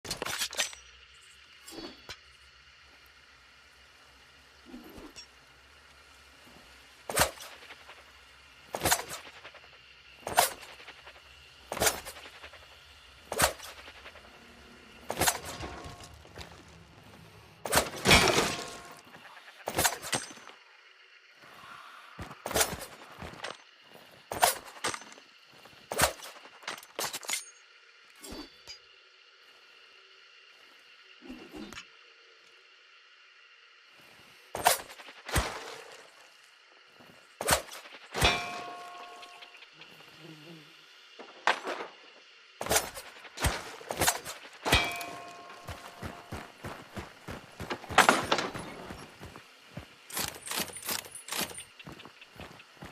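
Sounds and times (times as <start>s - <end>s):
throwing knives striking target: 17.6s - 19.0s, 42.6s - 46.5s.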